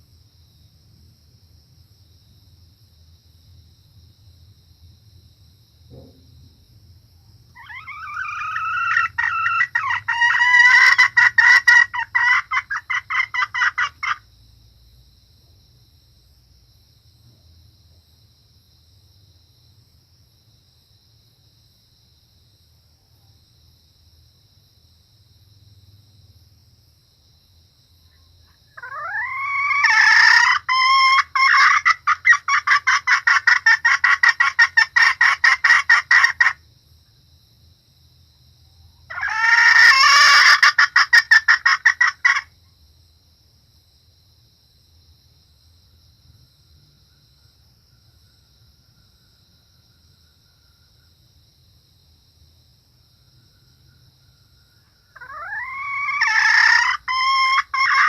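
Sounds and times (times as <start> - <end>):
hen cackling: 7.5 - 14.2, 28.7 - 36.6, 39.1 - 42.5, 55.1 - 58.0.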